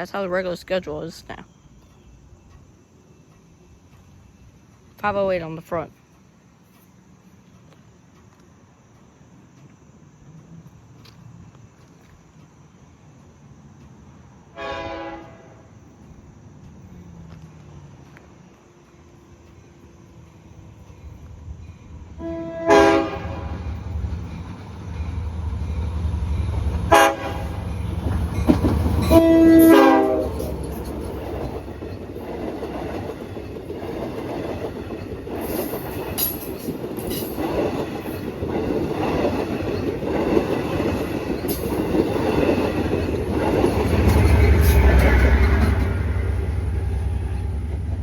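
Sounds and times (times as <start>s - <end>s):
train rumble and wheel clatter: 0.0s - 48.0s
train horn blasts: 14.5s - 15.7s, 22.2s - 23.8s, 26.9s - 27.7s, 29.0s - 30.6s.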